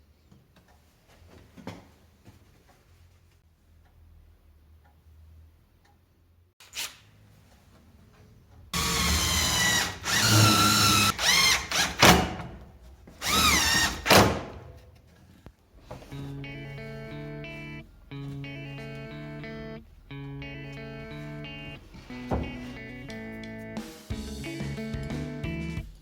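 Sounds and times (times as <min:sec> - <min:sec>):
power drill motor whine: 0:08.8 - 0:12.2, 0:13.2 - 0:14.2.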